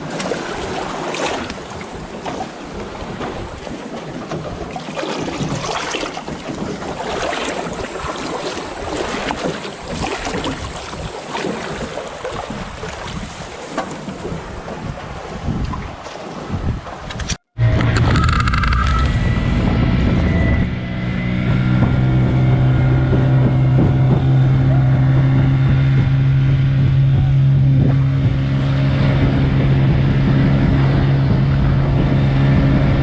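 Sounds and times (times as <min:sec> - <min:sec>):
rush of water: 0:00.0 - 0:33.0
water slapping hull: 0:00.0 - 0:33.0
wind buffeting microphone: 0:00.0 - 0:33.0.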